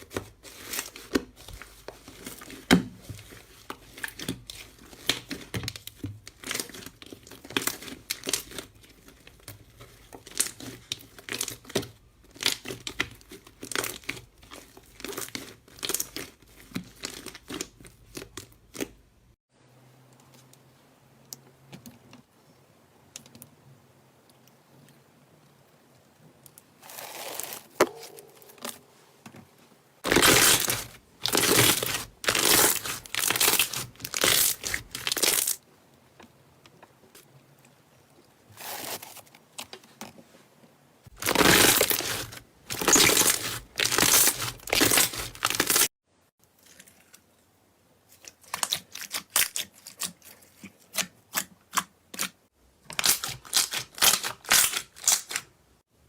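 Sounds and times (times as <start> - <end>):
slime squelching and crackling: 0.0 - 19.0, 30.0 - 35.6, 41.1 - 45.9.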